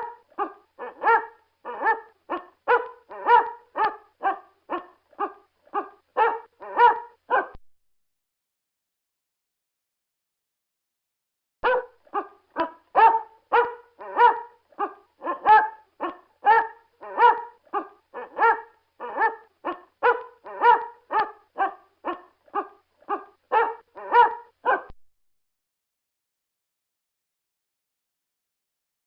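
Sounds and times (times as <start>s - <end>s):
dog barking: 0.0s - 7.6s, 11.6s - 25.0s.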